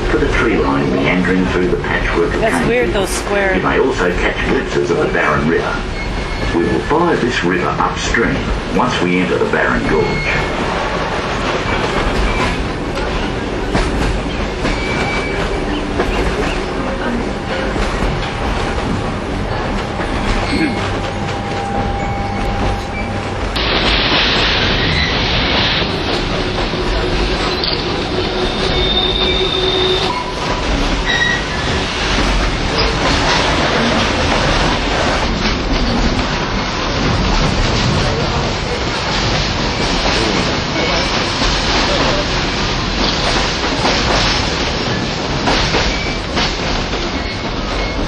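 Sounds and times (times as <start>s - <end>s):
train carriage rolling rumble: 0.0s - 48.0s
high train wheel squeals: 5.8s - 7.0s, 9.6s - 16.9s, 19.8s - 23.4s, 24.6s - 34.1s, 47.0s - 48.0s.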